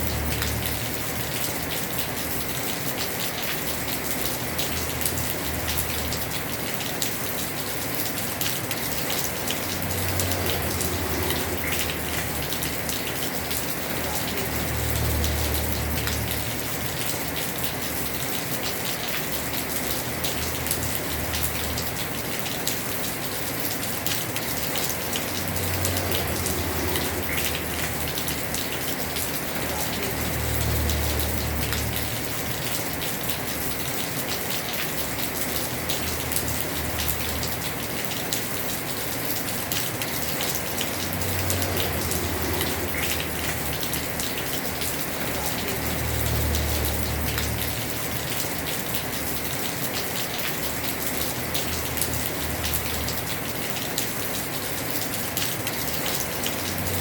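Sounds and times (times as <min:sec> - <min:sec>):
heavy rain on a roof: 0:00.0 - 0:57.0.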